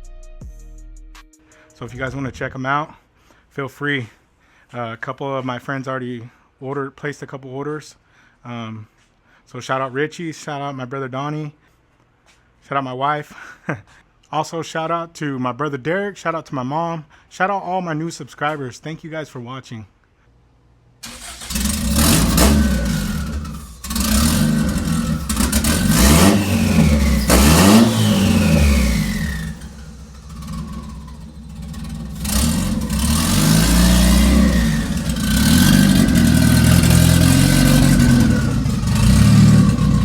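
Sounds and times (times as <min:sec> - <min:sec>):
car engine revving: 0:21.0 - 0:40.0.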